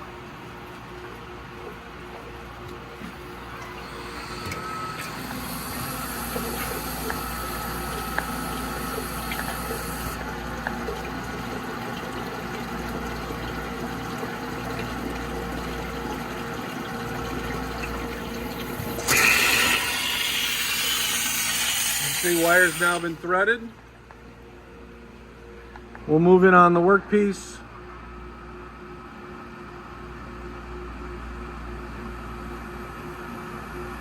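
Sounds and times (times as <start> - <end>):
pump running: 0.0 - 26.5
water flowing: 0.6 - 23.4
loud hiss: 19.0 - 23.2.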